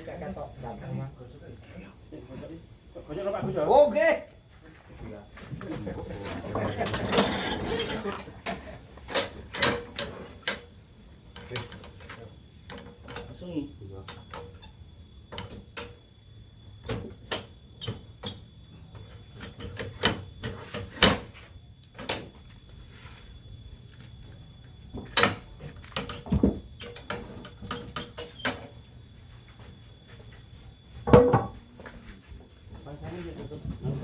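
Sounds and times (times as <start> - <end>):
loud thumps: 31.0 - 31.7
hard objects knocking: 31.1 - 31.6.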